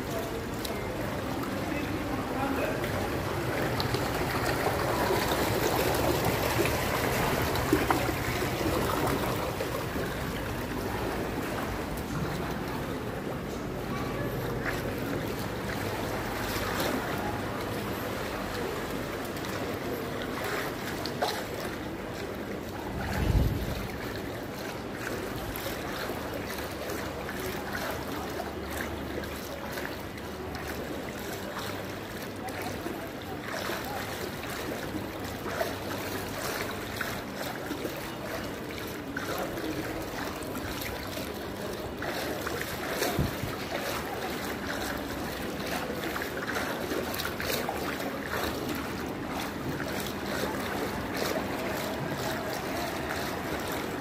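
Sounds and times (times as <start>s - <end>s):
water sloshing and splashing: 0.0s - 54.0s
wind on microphone: 23.0s - 23.9s.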